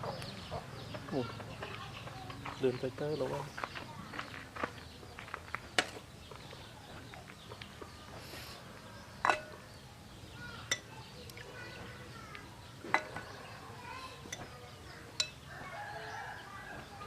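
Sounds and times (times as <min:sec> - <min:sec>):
birds chirping: 0:00.0 - 0:17.0
chickens chirping: 0:00.0 - 0:17.0
kitchenware clinks: 0:09.2 - 0:09.6.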